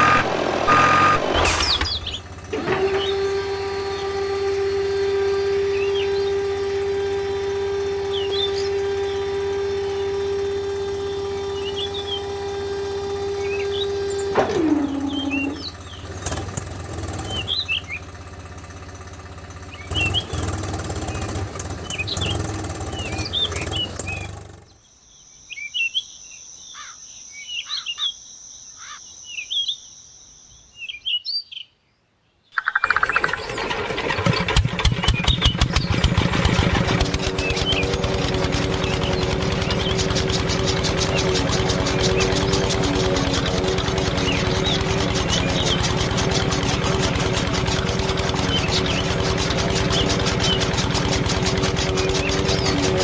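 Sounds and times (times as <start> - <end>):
motor rattling: 0.0 - 24.9, 32.6 - 53.0
small motor whining: 0.0 - 24.9, 32.8 - 53.0
small birds chirping: 1.6 - 33.6, 37.0 - 53.0.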